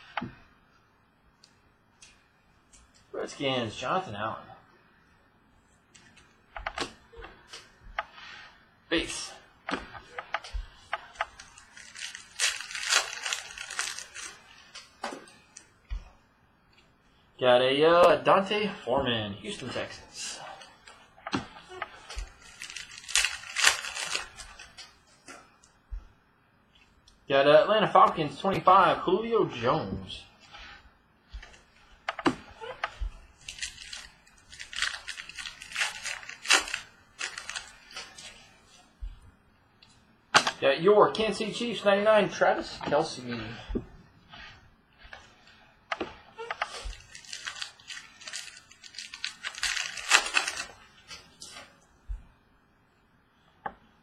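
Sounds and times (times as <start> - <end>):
packaging rustling and crinkling: 9.8 - 15.7, 19.5 - 25.7, 30.0 - 39.1, 42.8 - 51.8.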